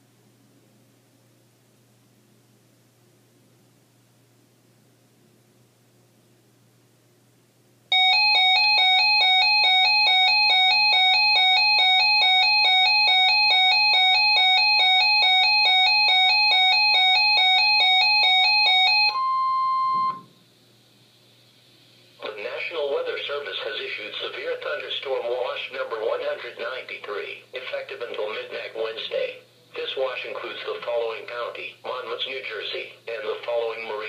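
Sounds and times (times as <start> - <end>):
steady single tone: 19.1 - 20.4
faint hiss: 20.3 - 23.4.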